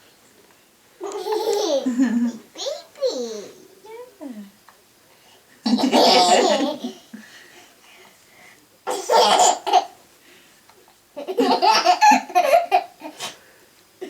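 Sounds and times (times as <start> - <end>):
young child laughing: 1.0 - 3.5.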